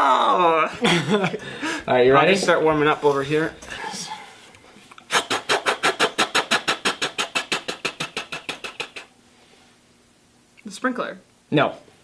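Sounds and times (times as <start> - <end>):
person making mouth clicking sounds: 4.9 - 9.2.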